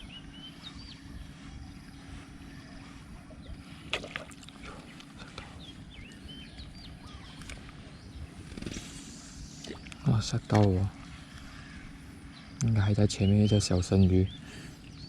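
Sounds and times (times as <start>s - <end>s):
steady low background noise: 0.0s - 15.0s
whistled bird calls: 5.6s - 10.0s.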